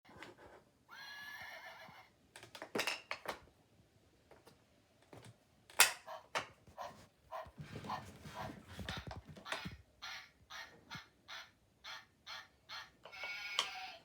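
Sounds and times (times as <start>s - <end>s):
recorded horse whinny: 1.0s - 2.1s.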